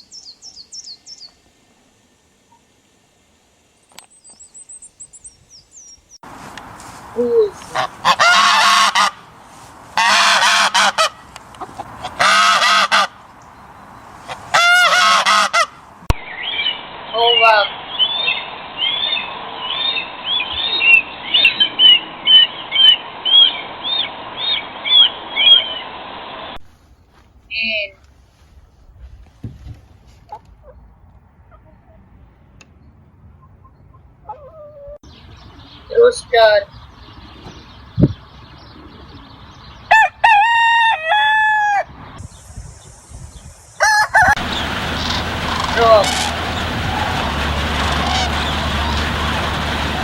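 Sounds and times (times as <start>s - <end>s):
bird chirping: 0.0s - 1.4s, 3.8s - 6.2s, 16.2s - 26.0s, 32.7s - 40.1s, 42.2s - 43.8s
rooster crowing: 7.8s - 9.2s, 10.0s - 11.3s, 12.0s - 13.2s, 14.5s - 15.8s, 39.9s - 42.0s, 43.8s - 49.5s.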